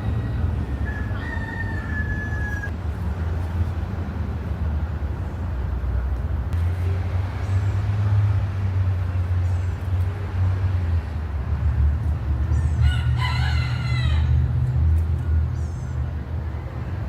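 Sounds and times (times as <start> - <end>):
rooster crowing: 0.0 - 2.7, 12.8 - 14.4.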